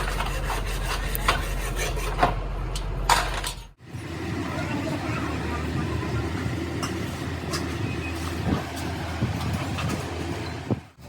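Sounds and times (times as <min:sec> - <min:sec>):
low engine drone: 0:02.1 - 0:11.0.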